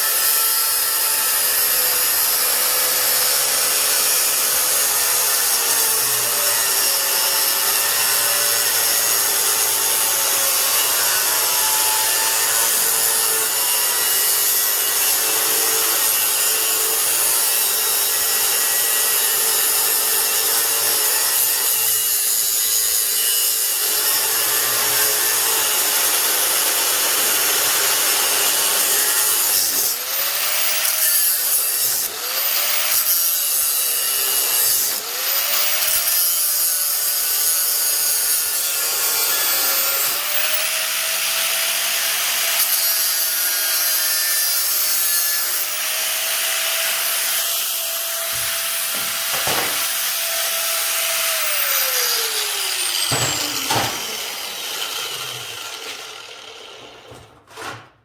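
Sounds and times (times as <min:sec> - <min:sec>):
power grinder on metal: 0:00.0 - 0:57.9.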